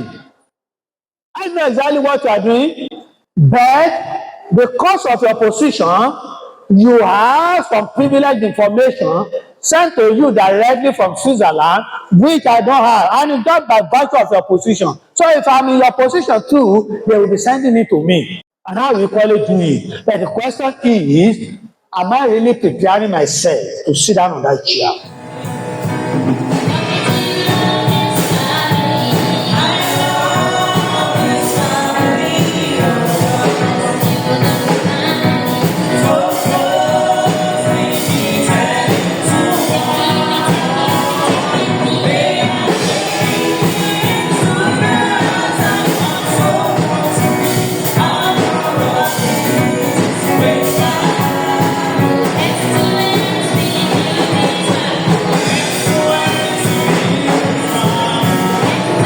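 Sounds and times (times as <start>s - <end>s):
band playing: 25.0s - 59.0s
gospel voices singing: 25.0s - 59.0s.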